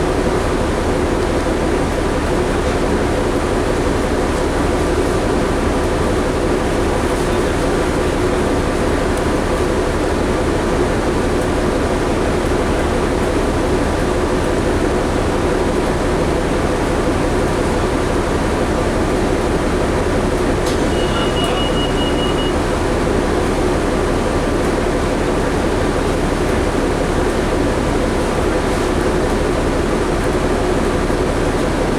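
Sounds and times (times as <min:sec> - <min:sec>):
bus engine and road noise: 0:00.0 - 0:31.9
short high-pitched beep: 0:20.8 - 0:22.6.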